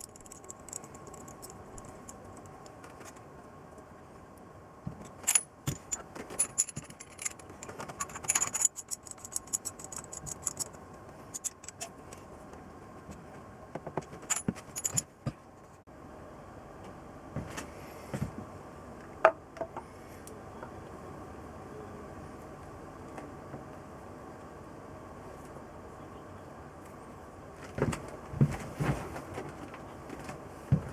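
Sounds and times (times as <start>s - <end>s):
metal parts and tools clinking: 0.0s - 3.2s, 5.0s - 12.2s, 14.1s - 15.2s.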